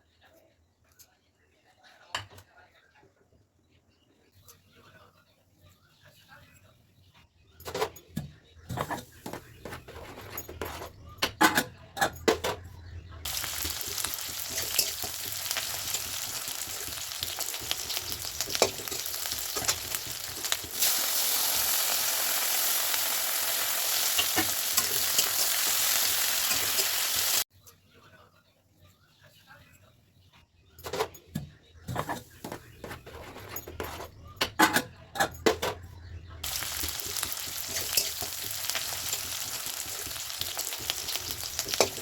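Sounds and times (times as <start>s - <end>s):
utensils clattering against pan: 7.6s - 27.4s, 30.8s - 42.0s
food sizzling in oil: 13.2s - 27.5s, 36.4s - 42.0s.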